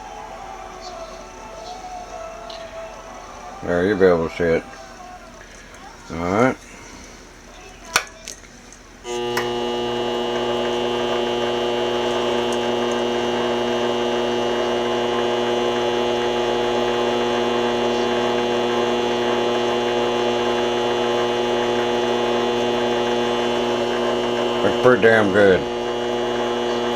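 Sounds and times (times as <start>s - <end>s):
lathe motor humming: 9.0s - 26.9s
switch click: 9.1s - 24.5s.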